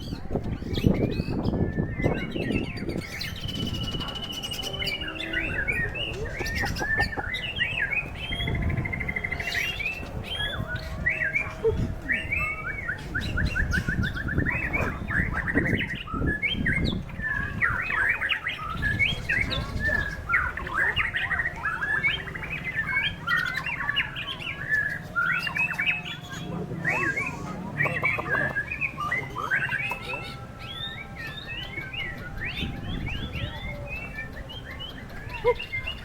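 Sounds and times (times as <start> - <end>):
wind rumble on microphone: 0.0 - 23.9, 31.5 - 36.0
bird singing whistled song: 0.0 - 36.0.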